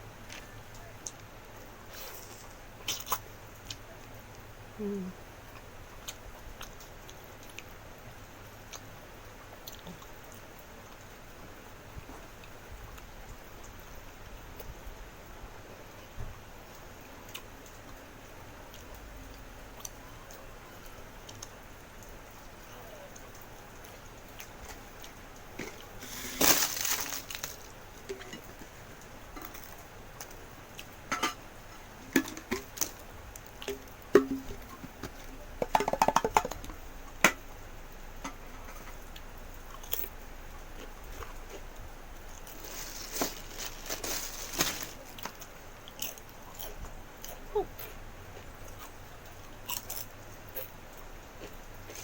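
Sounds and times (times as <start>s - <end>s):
crunching while eating: 1.9s - 3.9s, 22.9s - 36.6s, 38.4s - 52.0s
rustling: 24.4s - 30.4s, 42.4s - 45.5s.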